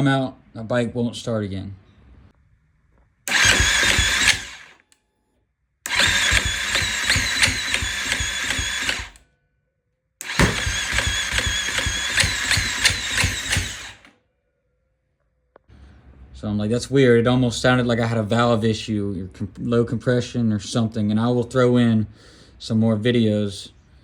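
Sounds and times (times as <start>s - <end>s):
motorcycle electric starter cranking: 3.3s - 5.0s, 5.8s - 9.2s, 10.2s - 14.2s.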